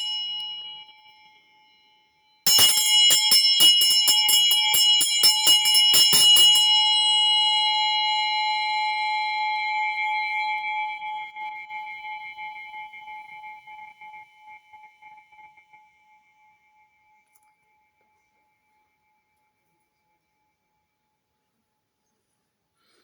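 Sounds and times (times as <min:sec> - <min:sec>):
hand bell ringing: 0:00.0 - 0:01.4, 0:02.4 - 0:08.5.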